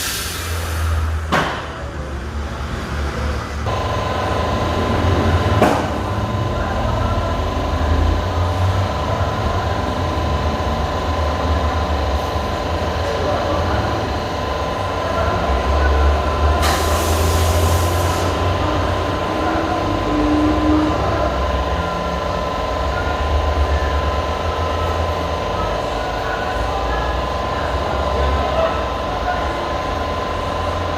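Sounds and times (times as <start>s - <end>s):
burst of hiss: 0.0s - 1.1s, 16.6s - 18.3s.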